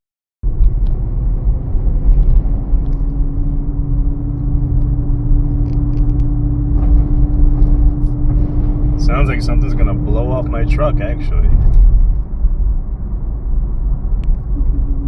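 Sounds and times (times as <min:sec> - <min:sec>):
wind buffeting microphone: 0:00.4 - 0:15.0
steady low hum: 0:00.5 - 0:15.0.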